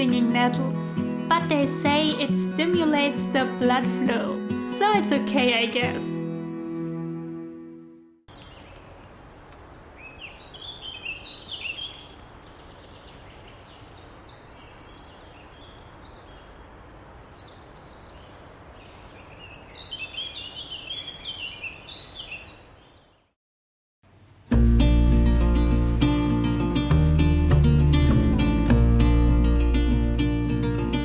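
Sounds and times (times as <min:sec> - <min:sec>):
outdoor background hiss: 0:08.3 - 0:23.3, 0:24.0 - 0:31.0
songbird singing: 0:08.3 - 0:23.3.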